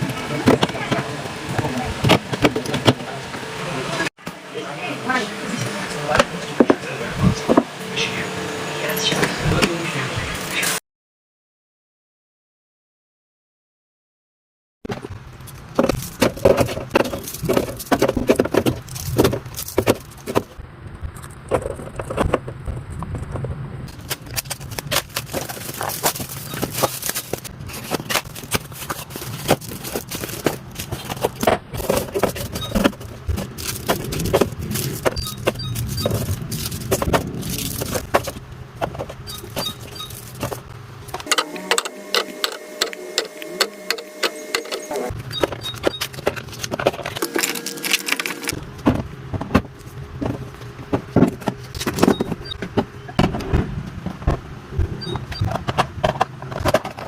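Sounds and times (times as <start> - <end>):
steady low hum: 14.9 - 57.0
containers and jars clattering: 23.9 - 40.6, 45.4 - 48.6.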